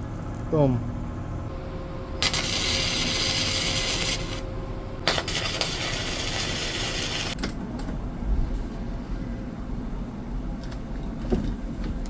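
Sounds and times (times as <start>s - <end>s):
arc welder crackling: 1.5s - 7.4s.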